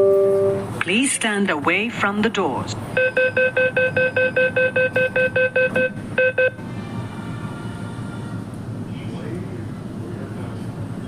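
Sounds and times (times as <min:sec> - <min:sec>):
faint traction motor whine: 0:02.5 - 0:11.0
door warning beeps: 0:03.0 - 0:06.6.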